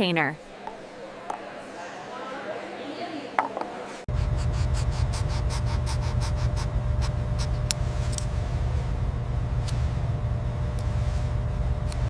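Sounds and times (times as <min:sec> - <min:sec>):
faint hum: 0:04.1 - 0:12.0
low rumble: 0:04.1 - 0:12.0.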